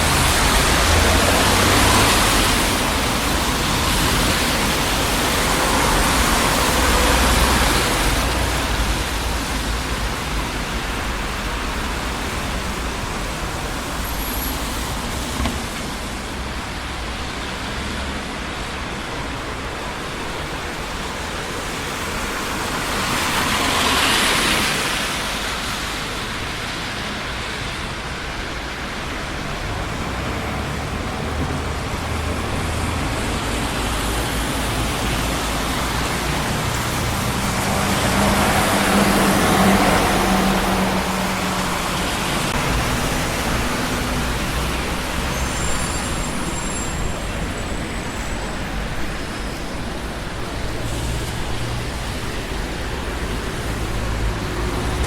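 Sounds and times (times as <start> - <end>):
city traffic: 0.0 - 55.0
vehicle engine hum passing: 29.0 - 49.4.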